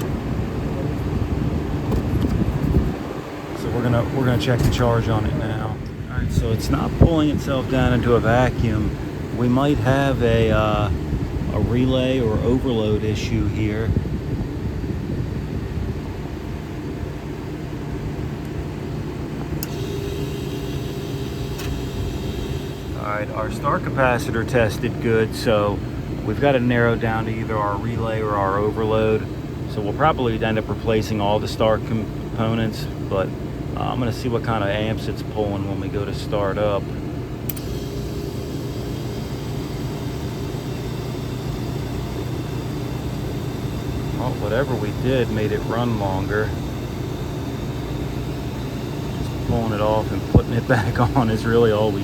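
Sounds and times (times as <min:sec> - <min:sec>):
higher steady hum: 0:00.0 - 0:52.0
refrigeration equipment humming: 0:00.0 - 0:52.0
sharp click: 0:37.4 - 0:37.8.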